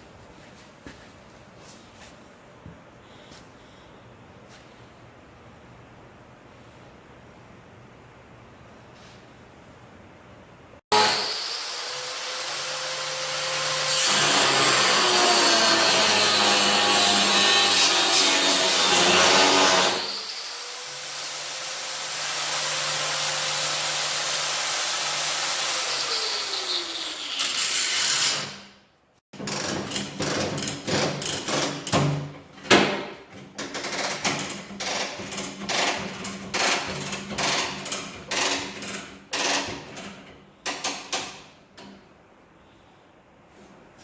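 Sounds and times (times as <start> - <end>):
rushing power tool noise: 10.9 - 28.5.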